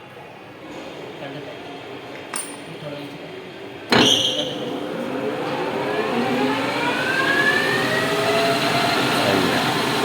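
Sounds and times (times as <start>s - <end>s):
lathe motor whine: 4.6s - 10.0s.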